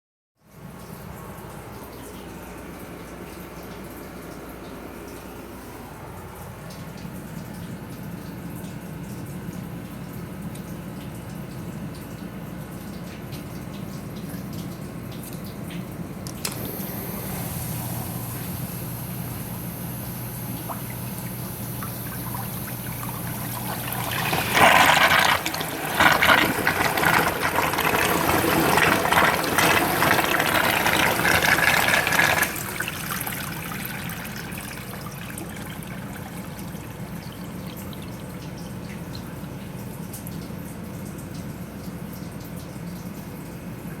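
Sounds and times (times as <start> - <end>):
sump pump humming: 0.6 - 41.6
water gushing: 12.8 - 40.5.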